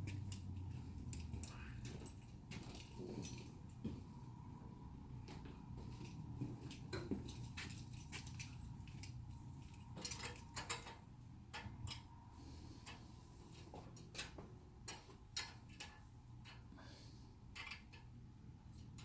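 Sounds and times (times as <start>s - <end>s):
low steady hum: 0.0s - 15.0s
metal parts clinking: 6.9s - 11.0s.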